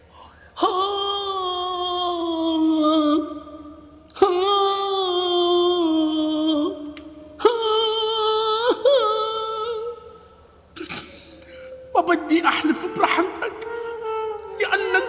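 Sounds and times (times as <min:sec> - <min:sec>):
voice wailing held notes: 0:11.4 - 0:15.0.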